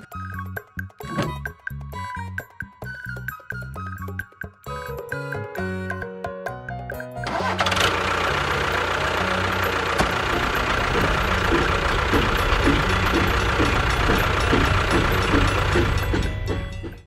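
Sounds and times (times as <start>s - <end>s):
engine running with low rumble: 7.3s - 17.0s.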